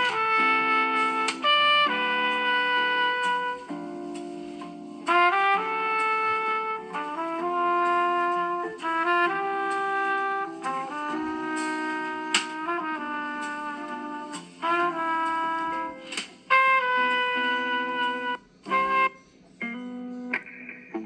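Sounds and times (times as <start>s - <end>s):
brass-like ringtone melody: 0.0s - 20.4s
sharp percussive hit: 11.5s - 12.8s, 16.0s - 16.5s.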